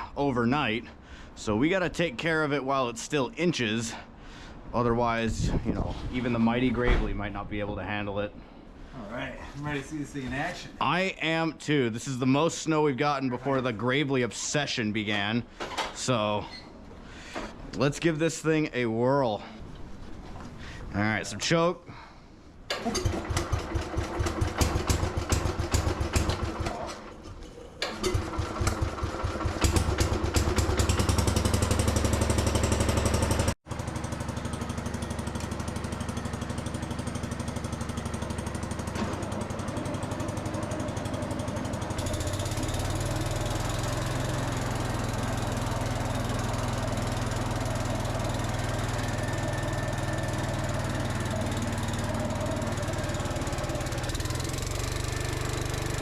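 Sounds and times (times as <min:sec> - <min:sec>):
engine starting and running: 0:22.6 - 0:56.0.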